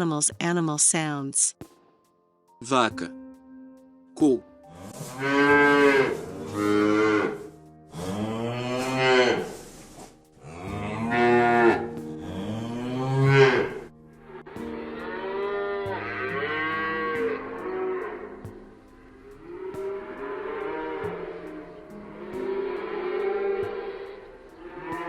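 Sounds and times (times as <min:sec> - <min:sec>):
cow mooing: 0:04.7 - 0:09.7, 0:10.4 - 0:18.4, 0:19.4 - 0:25.0.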